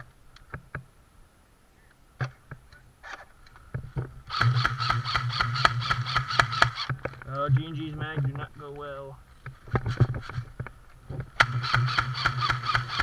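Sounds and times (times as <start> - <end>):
gearbox motor whine: 4.2 - 7.8, 11.2 - 13.0
airsoft gun firing full auto: 4.3 - 7.0, 11.4 - 13.0
sharp shot-like clicks: 4.3 - 7.0.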